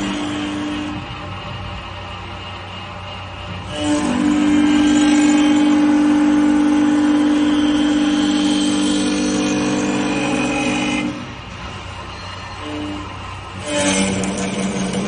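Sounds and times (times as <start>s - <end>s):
wood lathe motor humming: 3.7s - 11.4s.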